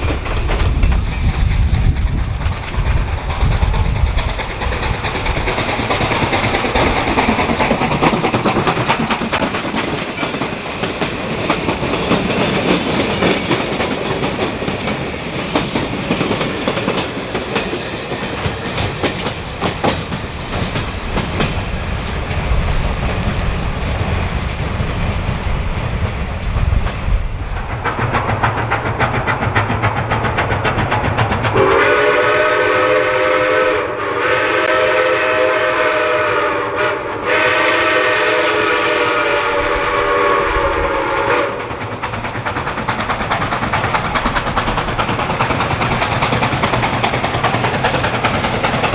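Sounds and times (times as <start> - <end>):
train wheels clattering: 0.0 - 32.2, 39.6 - 48.9
steam whistle chord: 31.6 - 41.5.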